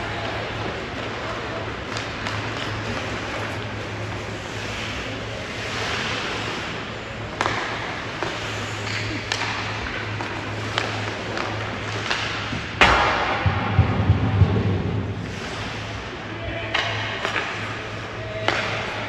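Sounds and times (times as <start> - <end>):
hockey sticks clicking on puck: 0.1 - 13.5, 16.6 - 19.0
loud heavy bang on boards: 12.8 - 15.3
low thumps: 12.8 - 16.0.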